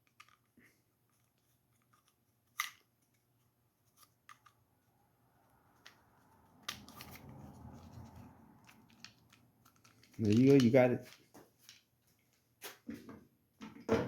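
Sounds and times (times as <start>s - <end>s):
clicks and taps of plastic parts: 8.6s - 11.8s.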